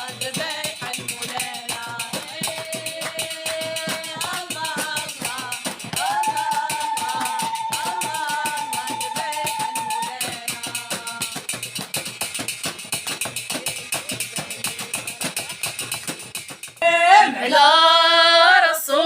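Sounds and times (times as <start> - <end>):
person singing praise song: 0.0 - 11.4, 16.8 - 19.0
tambourine and hand-drum beat: 0.0 - 16.8.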